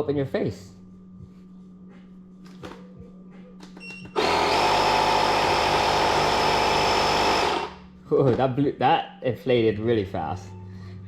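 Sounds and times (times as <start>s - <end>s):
air compressor chugging: 4.2s - 7.8s.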